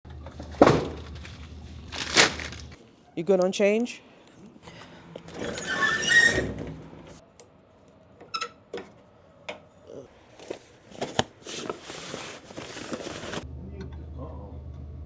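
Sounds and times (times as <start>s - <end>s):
vending machine clatter: 0.1s - 2.8s.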